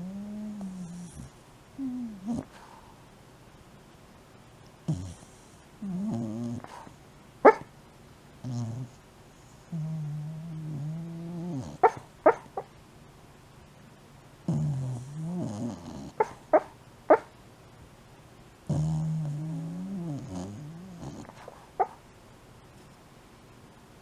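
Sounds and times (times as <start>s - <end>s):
dog moaning groans: 0.0s - 2.6s, 4.9s - 6.9s, 8.4s - 9.0s, 9.6s - 12.0s, 14.5s - 16.3s, 18.7s - 21.5s.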